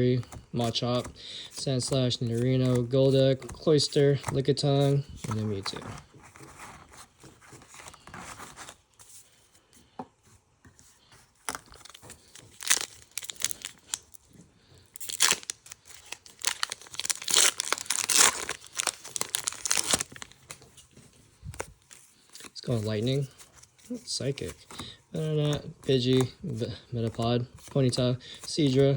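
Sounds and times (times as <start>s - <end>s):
foil wrapper crinkling and tearing: 11.4s - 20.6s.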